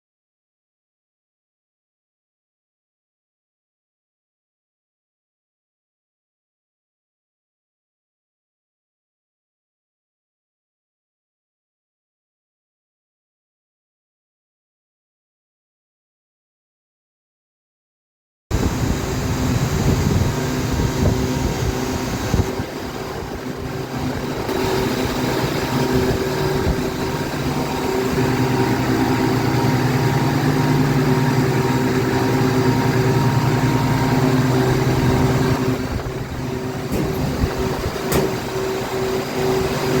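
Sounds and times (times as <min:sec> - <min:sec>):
refrigeration compressor humming: 0:18.5 - 0:40.0.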